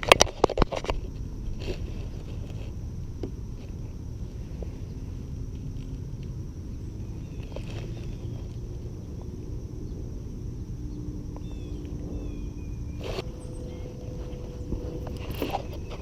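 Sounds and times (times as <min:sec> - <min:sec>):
low outdoor rumbling: 0:00.0 - 0:16.0
faint bird chirps: 0:10.9 - 0:14.9.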